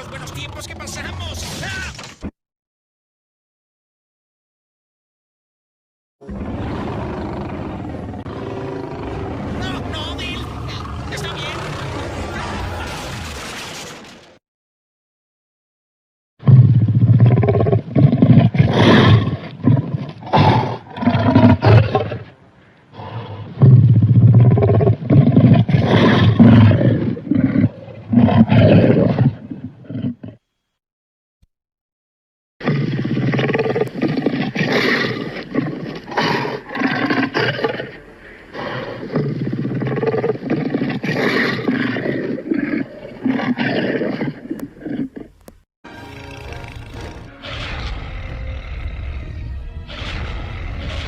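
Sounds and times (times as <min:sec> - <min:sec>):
deep rasping dragon roars: 0:06.2 - 0:13.0, 0:16.4 - 0:22.3, 0:22.9 - 0:30.4, 0:32.6 - 0:45.2, 0:45.9 - 0:51.0.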